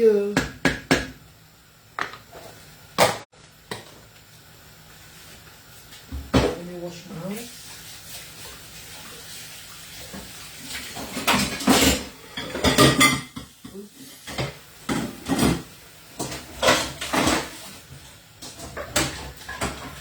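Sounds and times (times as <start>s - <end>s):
pots and metal utensils clattering: 8.0s - 20.0s.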